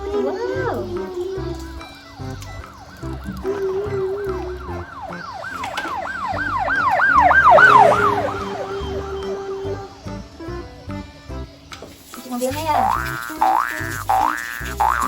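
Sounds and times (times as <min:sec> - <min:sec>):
electronic yelp siren: 0:02.5 - 0:10.0
steady lower tone: 0:03.1 - 0:10.1.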